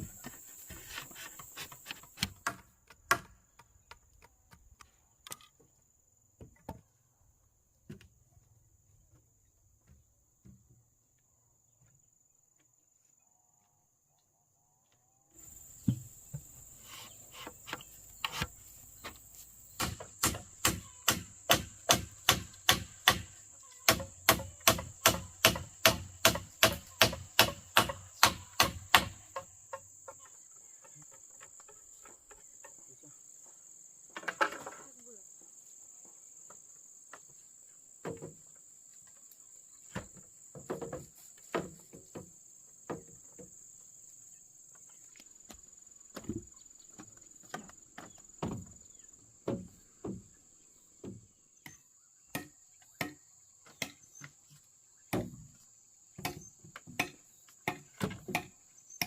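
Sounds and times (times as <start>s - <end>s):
chopping on wood: 1.2s - 4.7s, 19.8s - 29.5s, 51.0s - 54.3s, 55.1s - 55.4s, 56.2s - 58.6s
insects trilling: 14.6s - 59.0s.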